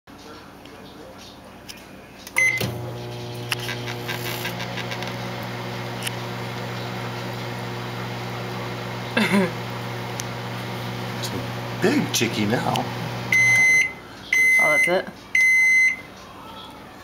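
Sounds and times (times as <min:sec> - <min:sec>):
microwave beep: 0:02.4 - 0:02.9, 0:13.1 - 0:16.1
microwave oven humming: 0:02.4 - 0:14.0.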